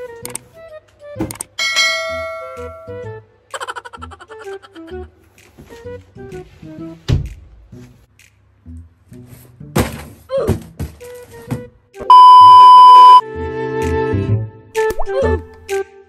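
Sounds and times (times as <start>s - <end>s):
quirky comedy music: 2.6s - 7.0s, 14.8s - 16.0s
loud steady beep: 12.0s - 13.2s.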